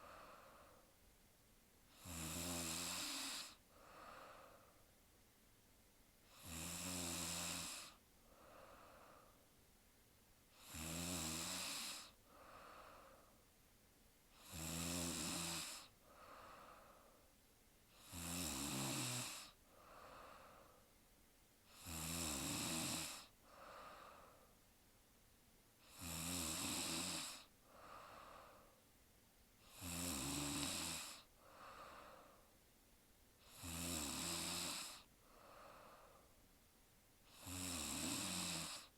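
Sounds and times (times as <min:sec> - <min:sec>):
faint breath: 0:00.0 - 0:01.0, 0:03.0 - 0:05.0, 0:07.5 - 0:09.6, 0:11.5 - 0:13.6, 0:15.6 - 0:18.0, 0:19.3 - 0:21.8, 0:23.1 - 0:24.7, 0:27.3 - 0:28.9, 0:31.0 - 0:32.6, 0:34.7 - 0:36.5
woman snoring: 0:01.9 - 0:04.6, 0:06.3 - 0:09.3, 0:10.6 - 0:13.2, 0:14.3 - 0:17.0, 0:17.9 - 0:20.7, 0:21.7 - 0:24.4, 0:25.8 - 0:28.7, 0:29.6 - 0:32.4, 0:33.4 - 0:36.3, 0:37.3 - 0:38.9.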